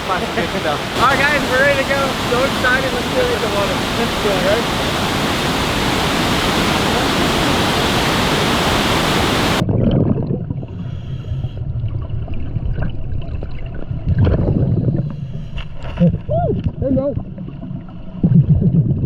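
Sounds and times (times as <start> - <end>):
waterfall roaring: 0.0 - 9.6
muffled underwater rumble: 0.0 - 19.0.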